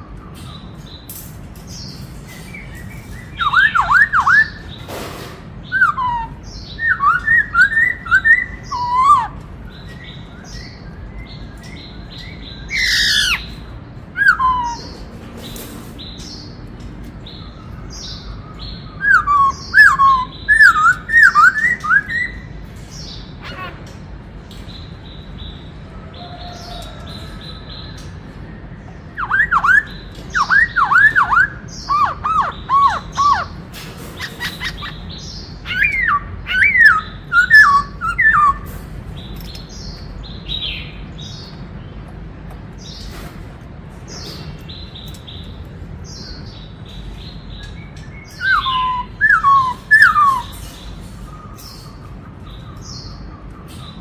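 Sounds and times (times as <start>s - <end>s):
bird whistled song phrases: 2.6s - 4.8s, 5.7s - 13.6s, 14.2s - 15.0s, 17.4s - 22.6s, 29.1s - 33.6s, 34.2s - 38.7s, 47.6s - 50.6s
soft high bird chirps: 44.2s - 54.0s.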